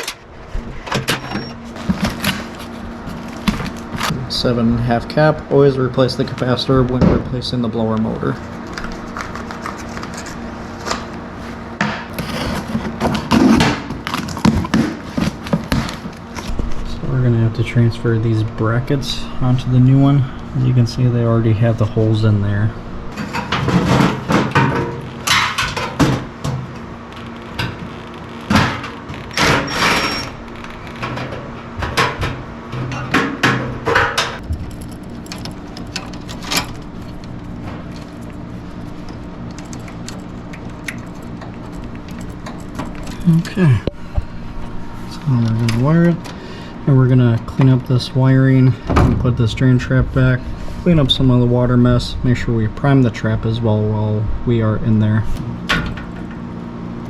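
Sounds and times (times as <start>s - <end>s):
metal scraping rattles: 0.0s - 4.2s, 34.2s - 46.1s
steady low hum: 0.0s - 57.0s
metal clanks and knocks: 0.9s - 4.2s, 31.0s - 44.3s
clatter of metal parts handled: 1.3s - 4.1s, 34.4s - 44.7s.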